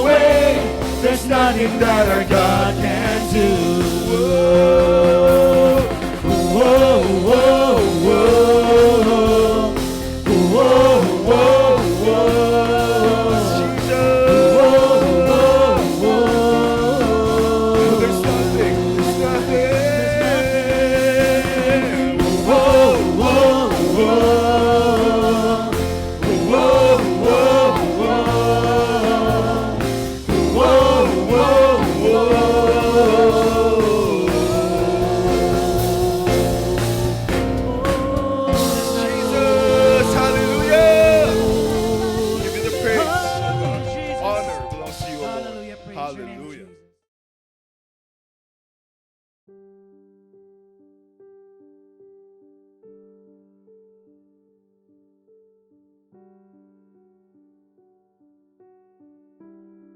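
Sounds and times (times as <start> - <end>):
drums: 0.0 - 46.5
person singing: 0.0 - 46.6
bass: 0.0 - 46.7
worship band playing: 0.0 - 46.7.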